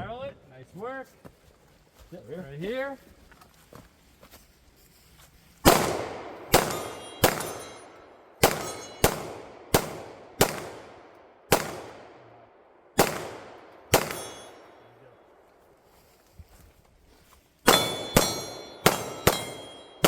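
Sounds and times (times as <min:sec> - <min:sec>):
gunshots echoing: 0:05.6 - 0:15.4, 0:17.6 - 0:20.0.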